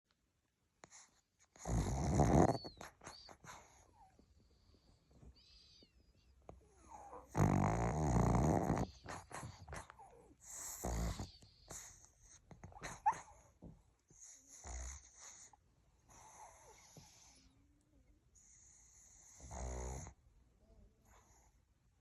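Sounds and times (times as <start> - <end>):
dog breathing: 0.8 - 5.9, 6.5 - 17.5
dog snoring loudly: 1.5 - 2.8, 6.9 - 11.9, 14.5 - 15.4, 18.9 - 20.2.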